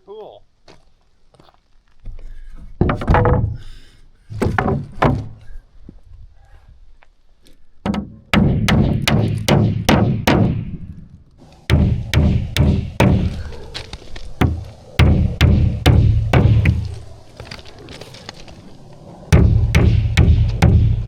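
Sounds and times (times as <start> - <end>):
hammer driving nails into wood: 7.8 - 10.7, 11.7 - 13.4.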